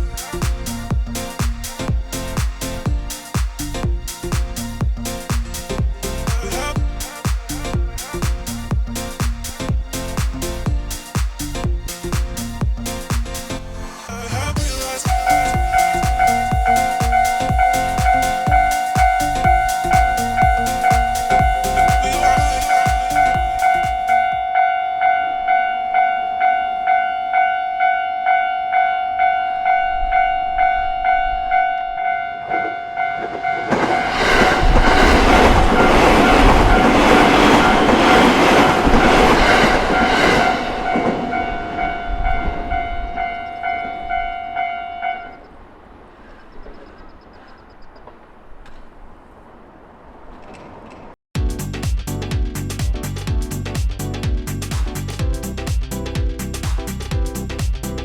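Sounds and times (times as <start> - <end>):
train wheels and running noise: 15.0 - 24.4, 32.5 - 43.2, 50.3 - 51.2
level crossing alarm bell: 15.1 - 33.9, 40.8 - 45.5.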